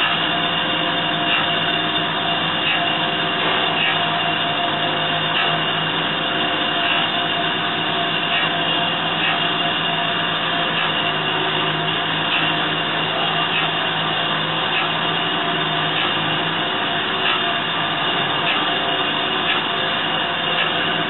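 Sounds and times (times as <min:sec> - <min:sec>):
surface grinder hum and hiss: 0:00.0 - 0:21.0.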